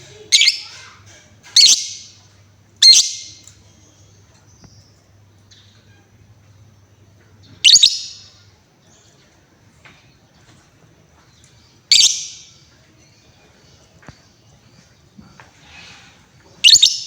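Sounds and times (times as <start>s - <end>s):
lovebird harsh shrill calls: 0.3s - 0.8s, 1.6s - 2.0s, 2.8s - 3.3s, 7.6s - 8.3s, 11.9s - 12.5s, 16.6s - 17.0s.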